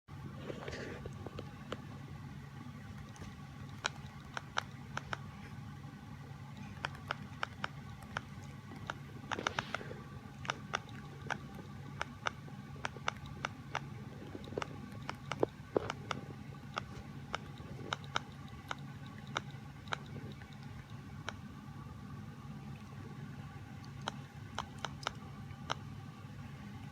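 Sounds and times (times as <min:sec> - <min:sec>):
steady low hum: 0:00.1 - 0:26.9
bird imitating keyboard clicks: 0:03.0 - 0:05.3, 0:06.6 - 0:09.8, 0:10.4 - 0:21.4, 0:24.0 - 0:25.8.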